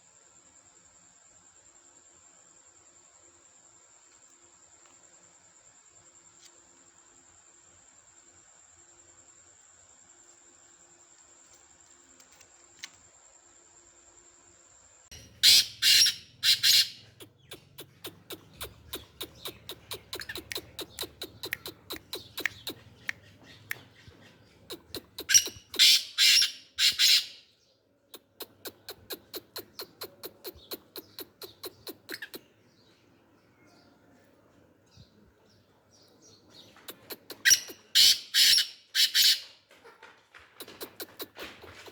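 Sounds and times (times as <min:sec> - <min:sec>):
fast sharp ticks: 0:15.1 - 0:26.0, 0:28.2 - 0:32.4, 0:36.8 - 0:38.2, 0:40.6 - 0:41.9
francolin harsh grating calls: 0:15.1 - 0:27.5, 0:28.2 - 0:32.6, 0:36.9 - 0:39.5.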